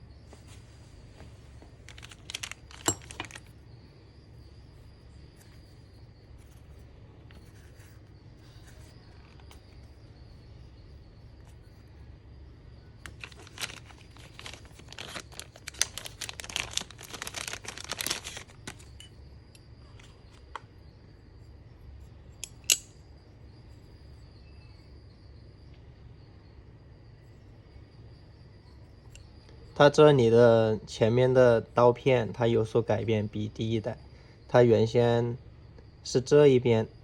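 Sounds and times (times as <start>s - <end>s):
low steady hum: 0.0s - 30.3s
wrapping crinkling and tearing: 1.9s - 3.5s, 13.0s - 19.1s.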